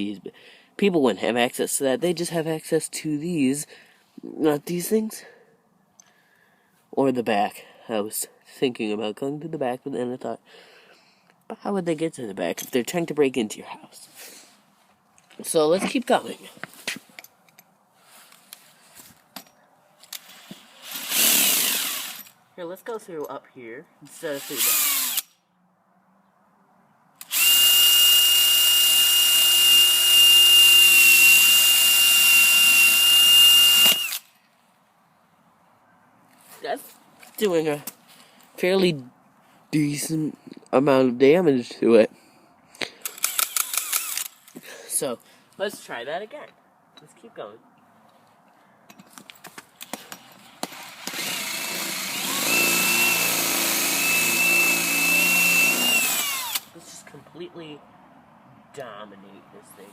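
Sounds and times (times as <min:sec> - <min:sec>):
drill click: 0:20.1 - 0:22.3, 0:24.4 - 0:25.3, 0:27.2 - 0:34.3, 0:43.0 - 0:44.5, 0:49.8 - 0:56.7
electric drill whining into metal: 0:20.1 - 0:22.4, 0:24.4 - 0:25.3, 0:27.2 - 0:34.3, 0:43.1 - 0:44.4, 0:50.6 - 0:56.7.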